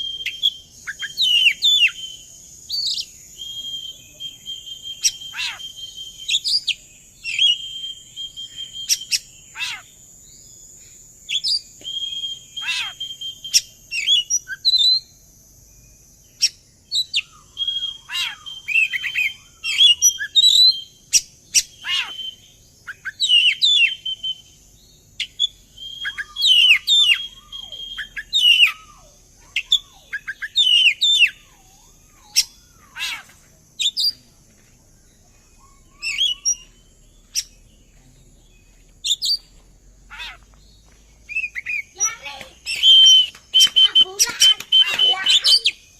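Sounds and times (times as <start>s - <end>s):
bird singing whistled notes: 0.0s - 34.4s, 35.0s - 45.9s.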